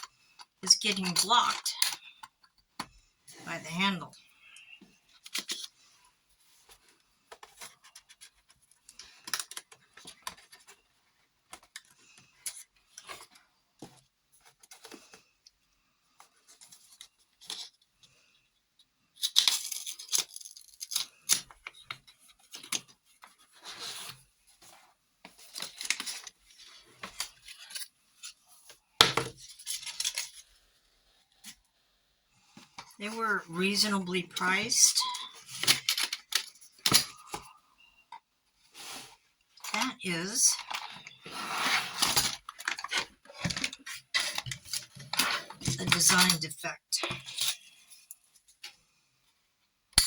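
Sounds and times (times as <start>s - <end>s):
boxes scraping and rustling: 23.3s - 28.4s, 40.6s - 46.2s.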